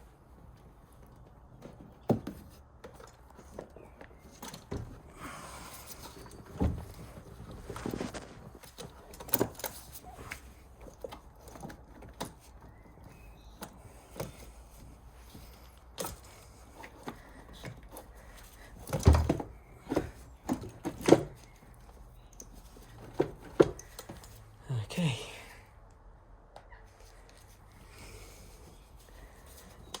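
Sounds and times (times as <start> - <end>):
knocks and clunks: 16.8 - 21.7.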